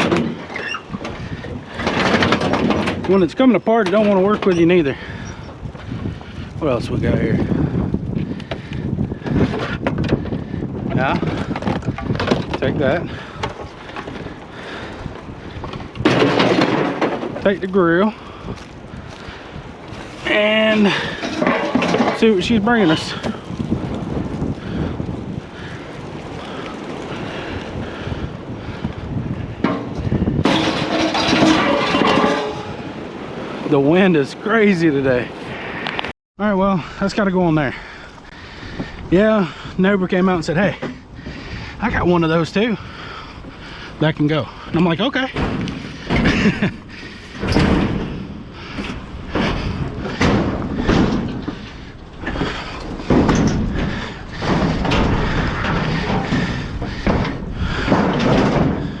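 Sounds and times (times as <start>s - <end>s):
scrap metal thuds and knocks: 0.0s - 5.6s, 8.4s - 23.4s, 29.5s - 33.1s, 40.2s - 59.0s
wind buffeting microphone: 0.0s - 59.0s.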